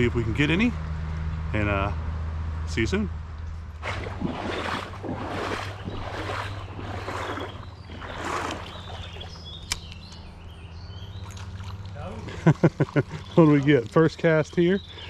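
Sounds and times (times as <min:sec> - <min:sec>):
footsteps splashing through creek: 0:03.8 - 0:09.8, 0:11.1 - 0:15.0
sharp click: 0:09.6 - 0:10.2.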